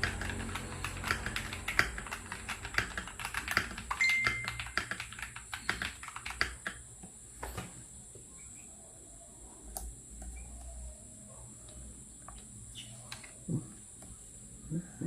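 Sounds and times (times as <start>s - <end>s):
mechanical keyboard typing: 0.0s - 6.8s.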